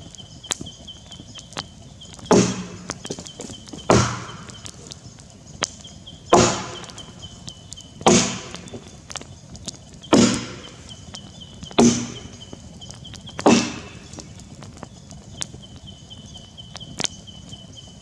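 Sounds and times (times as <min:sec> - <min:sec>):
axe chopping log: 0:02.3 - 0:04.9, 0:06.3 - 0:07.2, 0:08.0 - 0:09.0, 0:10.1 - 0:11.0, 0:11.8 - 0:12.6, 0:13.4 - 0:14.3.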